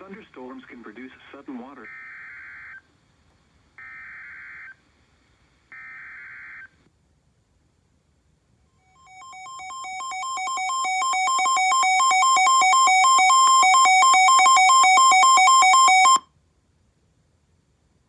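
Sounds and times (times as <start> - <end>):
warbling electronic alarm tones: 8.9 - 16.2.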